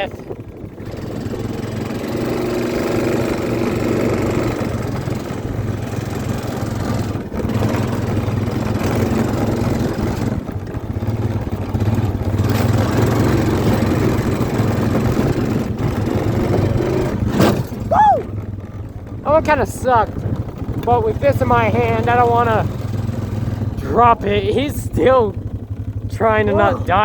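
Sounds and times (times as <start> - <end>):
atv engine running hard: 0.0 - 27.0.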